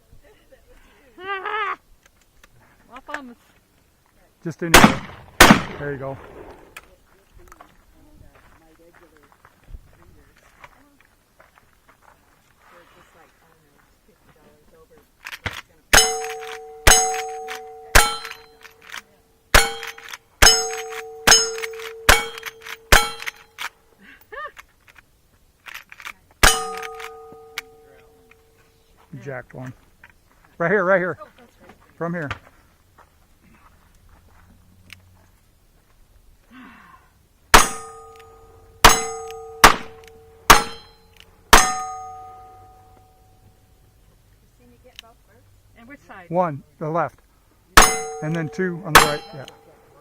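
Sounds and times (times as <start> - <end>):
gunshots: 4.7 - 6.8, 19.6 - 23.4, 38.8 - 41.9, 47.8 - 49.6
steel plate ringing: 15.9 - 18.6, 19.5 - 23.5, 26.4 - 28.6, 37.5 - 43.4, 47.8 - 49.8.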